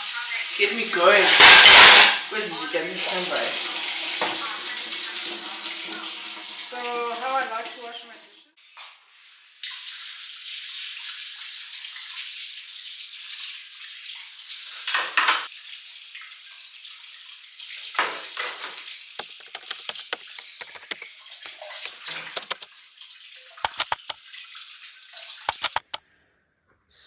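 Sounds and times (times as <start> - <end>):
tap water running into sink: 0.4 - 7.6, 17.1 - 22.8, 23.6 - 24.6, 25.2 - 26.0
dishes and cutlery clinking: 1.3 - 2.2, 18.0 - 22.7.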